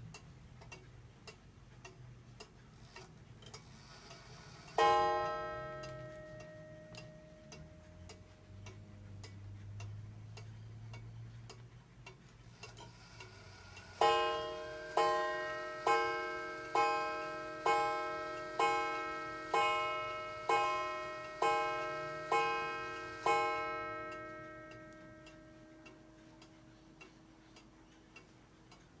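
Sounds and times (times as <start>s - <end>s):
clock ticking: 0.0s - 29.0s
wall clock striking: 4.7s - 8.3s, 13.8s - 26.8s.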